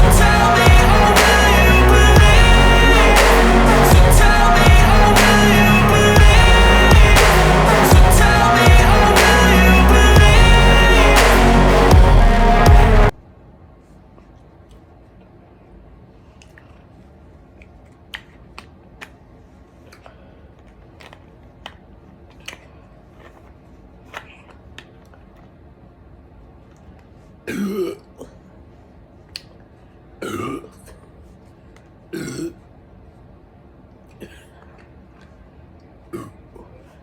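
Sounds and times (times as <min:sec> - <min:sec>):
person burping: 0:30.2 - 0:31.0, 0:32.1 - 0:32.6, 0:36.1 - 0:36.7.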